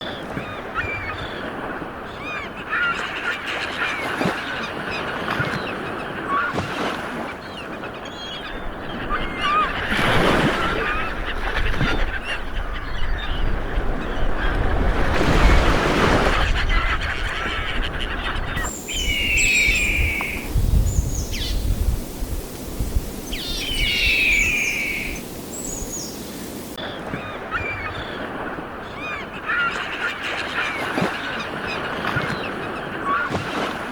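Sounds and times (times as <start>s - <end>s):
many birds calling: 7.5s - 33.6s
loud bursts of bird calls: 18.6s - 26.8s.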